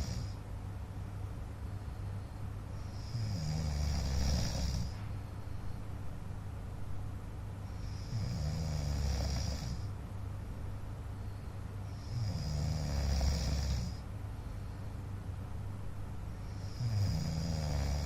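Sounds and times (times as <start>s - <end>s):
man snoring: 0.0s - 0.4s, 2.8s - 5.0s, 7.7s - 9.9s, 11.9s - 14.0s, 16.4s - 18.0s.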